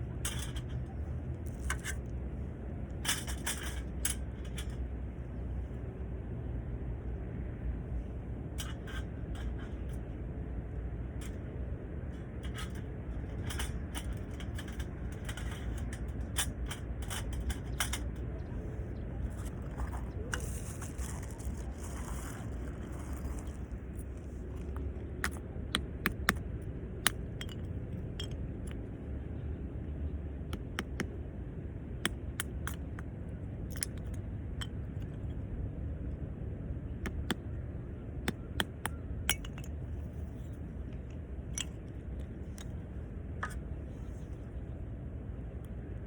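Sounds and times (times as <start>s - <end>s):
sharp clicks and clinks: 33.7s - 35.4s, 38.2s - 39.8s.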